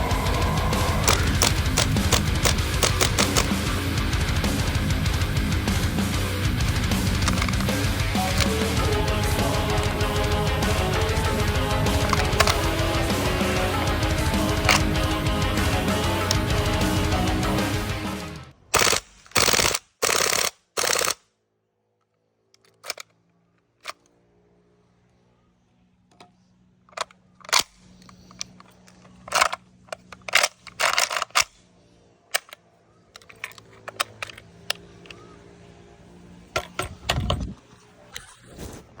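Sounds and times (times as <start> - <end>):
airsoft gun bursts: 0.0 - 3.7, 6.8 - 15.2, 18.6 - 21.2
sharp clicks and knocks: 0.0 - 5.9, 6.6 - 13.5, 33.2 - 35.2, 36.6 - 37.6.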